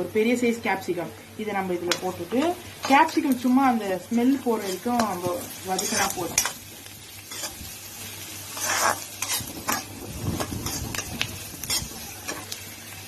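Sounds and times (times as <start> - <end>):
vegetables sizzling in a pan: 0.0 - 13.0
stirring scrapes and clicks: 8.5 - 12.6.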